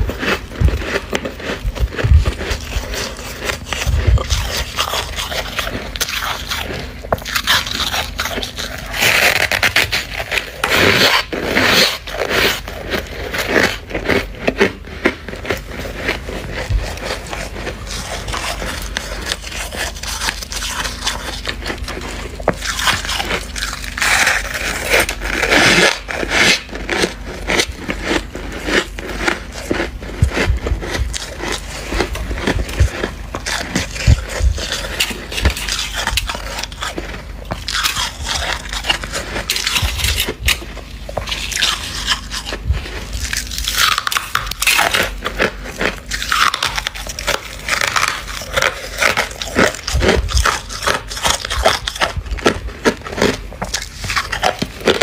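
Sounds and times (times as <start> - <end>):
frost being bitten and crunched: 0.0 - 55.0
frost being scraped: 0.0 - 55.0.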